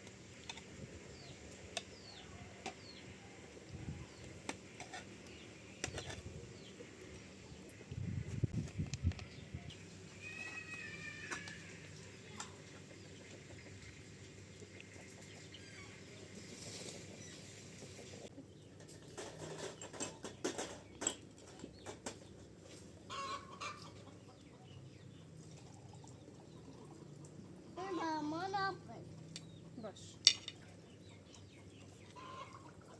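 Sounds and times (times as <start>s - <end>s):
chickens clucking: 11.4s - 32.9s.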